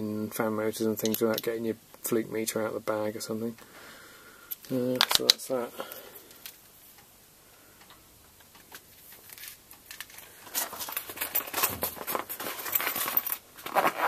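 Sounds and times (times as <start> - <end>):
tools and fabric pouch handled: 8.6 - 14.0.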